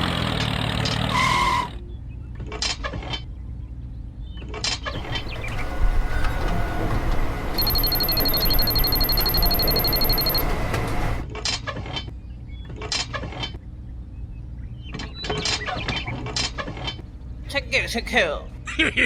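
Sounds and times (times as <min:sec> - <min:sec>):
steady machine noise: 0:05.0 - 0:11.2
rapid high-pitched electronic beeping: 0:07.6 - 0:10.5.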